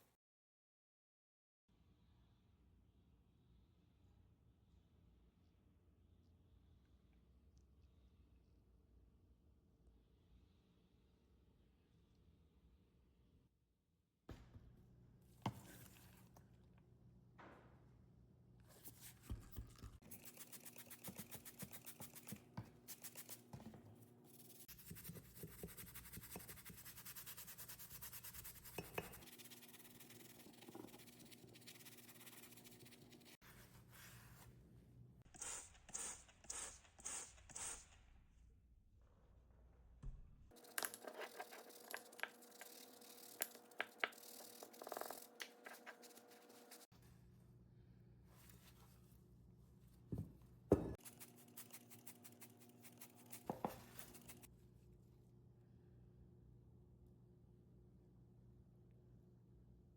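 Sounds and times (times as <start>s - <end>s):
short hissing strokes: 35.4s - 37.9s.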